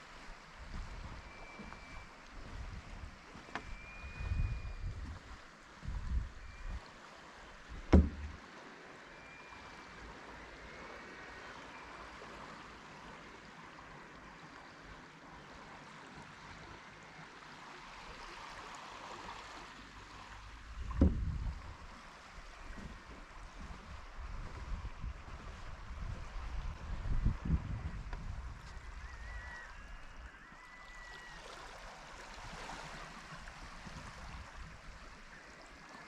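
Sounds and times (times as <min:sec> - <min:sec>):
wind rumbling on microphone: 0:00.0 - 0:06.8, 0:20.6 - 0:30.4, 0:32.3 - 0:35.3
calm sea water washing: 0:00.0 - 0:36.0
light wind: 0:00.0 - 0:36.0
low thumps: 0:07.8 - 0:08.4, 0:20.8 - 0:21.7.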